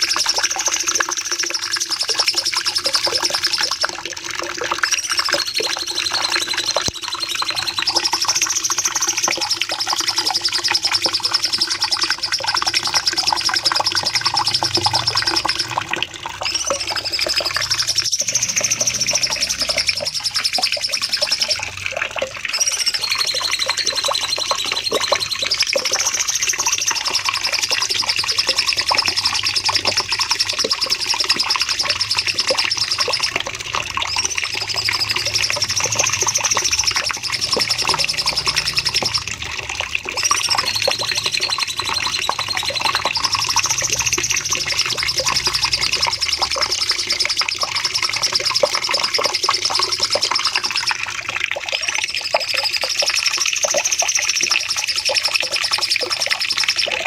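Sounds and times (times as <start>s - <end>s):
songbird singing rapid trills: 16.4s - 21.7s, 22.5s - 39.3s.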